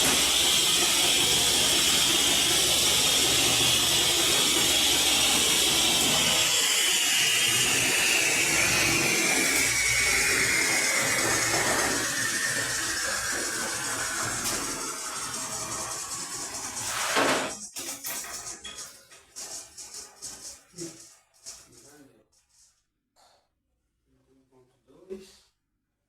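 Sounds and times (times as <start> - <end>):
electric power tool whining: 0.0 - 17.6.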